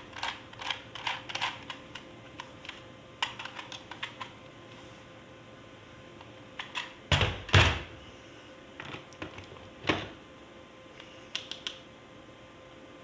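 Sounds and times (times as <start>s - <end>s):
toys and packaging clicking: 0.1s - 4.3s.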